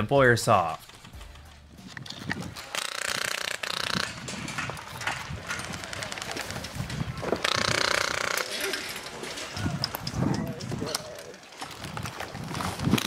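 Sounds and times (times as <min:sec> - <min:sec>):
airsoft gun firing bursts: 0:02.6 - 0:04.6
footsteps: 0:03.4 - 0:13.0.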